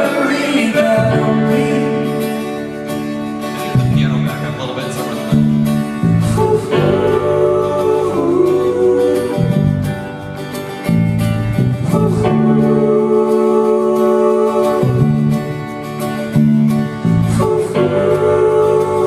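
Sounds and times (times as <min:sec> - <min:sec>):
voices singing: 0:00.0 - 0:02.6, 0:06.0 - 0:10.1, 0:11.8 - 0:15.9, 0:17.0 - 0:19.0
folk band playing live: 0:00.0 - 0:19.0
strummed acoustic guitar: 0:00.0 - 0:19.0.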